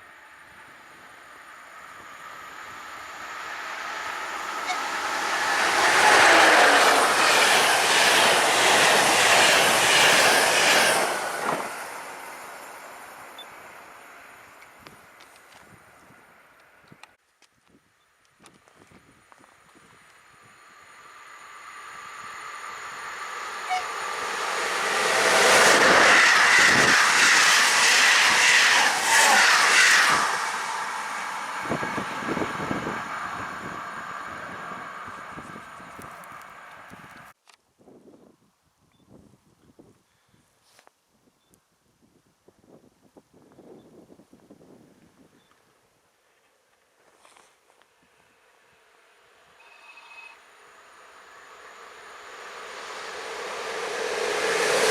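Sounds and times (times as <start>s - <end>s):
train passing on rails: 0.0s - 17.1s, 18.9s - 37.4s, 47.9s - 54.9s.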